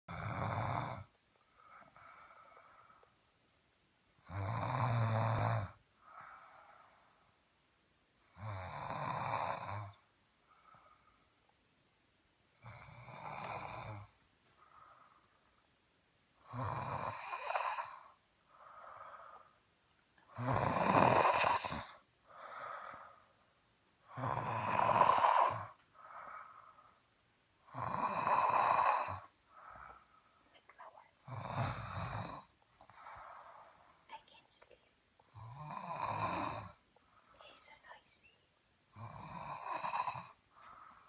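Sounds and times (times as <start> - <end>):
person snoring loudly: 16.4 - 18.1, 20.3 - 22.0, 24.1 - 25.8, 27.7 - 29.3, 31.3 - 32.5, 35.3 - 36.8, 39.0 - 40.4
soft breath out: 40.5 - 41.0.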